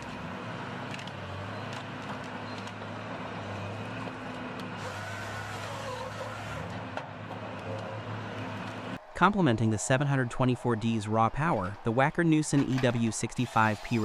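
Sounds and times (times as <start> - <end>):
diesel engine running: 0.0 - 9.2.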